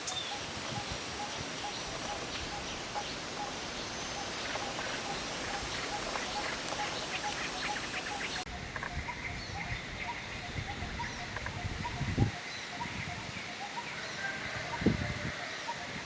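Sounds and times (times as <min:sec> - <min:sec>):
bird low repeating call: 0:00.0 - 0:12.4
steady background hiss: 0:00.0 - 0:16.0.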